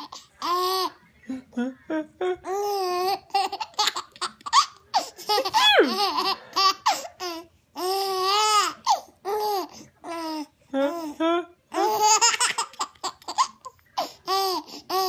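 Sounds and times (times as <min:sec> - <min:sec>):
baby laughing: 0:02.4 - 0:10.5, 0:11.7 - 0:15.0.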